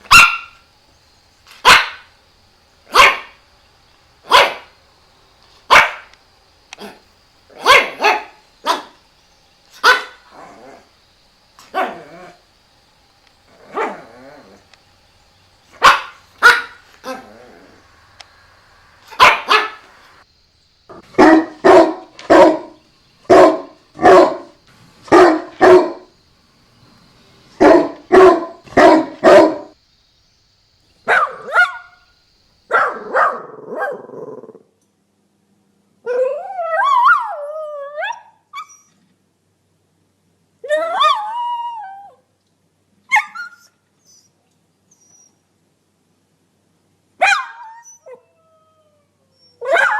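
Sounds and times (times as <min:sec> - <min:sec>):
dog barking: 0:00.0 - 0:00.6, 0:01.6 - 0:02.1, 0:02.9 - 0:03.4, 0:04.3 - 0:04.8, 0:05.7 - 0:06.2, 0:06.8 - 0:09.0, 0:09.8 - 0:10.3, 0:11.7 - 0:12.2, 0:13.7 - 0:14.1, 0:15.8 - 0:17.3, 0:19.1 - 0:19.9, 0:20.9 - 0:26.1, 0:27.6 - 0:29.8, 0:31.0 - 0:32.0, 0:32.7 - 0:34.2, 0:47.2 - 0:47.9, 0:49.6 - 0:49.9.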